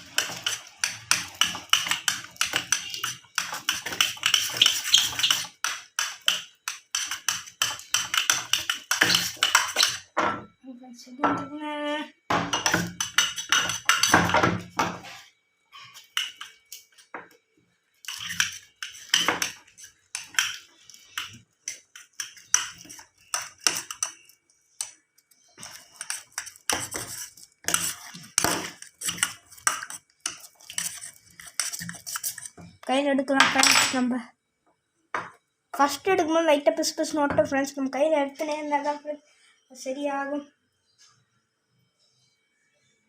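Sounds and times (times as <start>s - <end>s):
spoon stirring slime in bowl: 0.0s - 10.2s, 12.3s - 17.4s, 18.0s - 33.0s.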